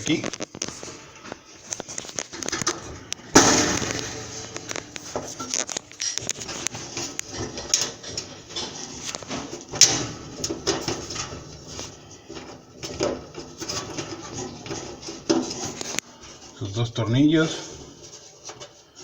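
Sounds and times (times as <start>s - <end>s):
sheet metal clattering and scraping: 1.6s - 19.0s
loud metal bang: 3.3s - 5.8s.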